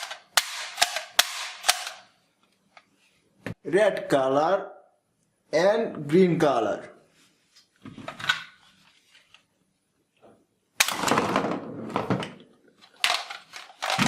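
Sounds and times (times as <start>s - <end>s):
plastic toys clattering: 11.0s - 14.0s.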